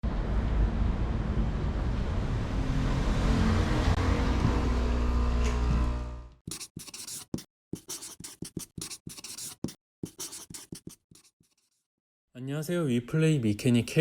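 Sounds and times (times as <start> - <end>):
short scratchy strokes: 6.5 - 11.8.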